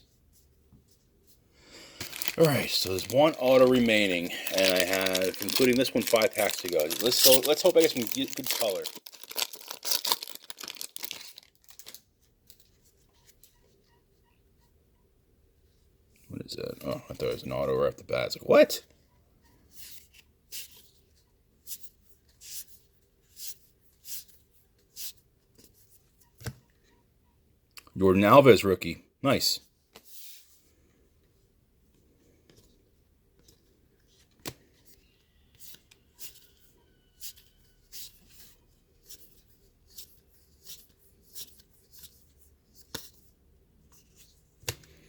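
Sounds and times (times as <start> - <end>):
trading cards swishing: 2.0 - 8.8.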